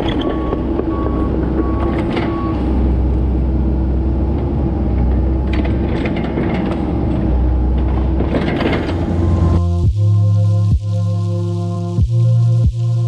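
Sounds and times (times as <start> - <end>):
backup alarm beeping: 0.0 - 3.1
metallic clanks and squeals of tracks: 0.0 - 3.3, 4.3 - 9.6
heavy diesel machine running: 0.0 - 10.0.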